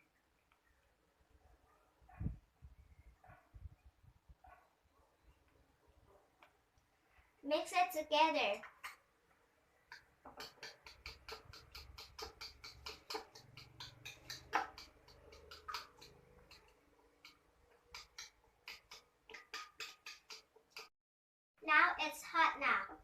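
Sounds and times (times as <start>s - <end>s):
utensil clicking against bowl: 9.9s - 20.9s.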